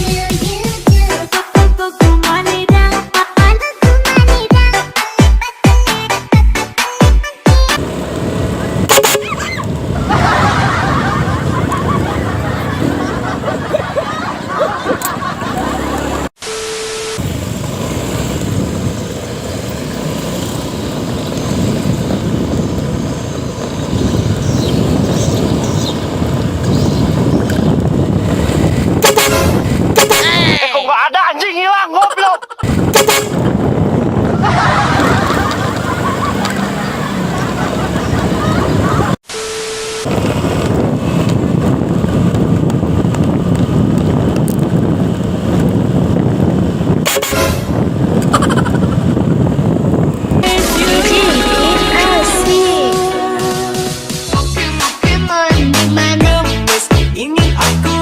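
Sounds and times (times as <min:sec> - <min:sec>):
road and engine rumble: 0:00.0 - 0:30.8, 0:32.4 - 0:58.0
wind noise: 0:07.8 - 0:16.3, 0:17.2 - 0:30.8, 0:32.6 - 0:39.2, 0:40.0 - 0:54.6
brief loud noise: 0:50.4 - 0:53.3.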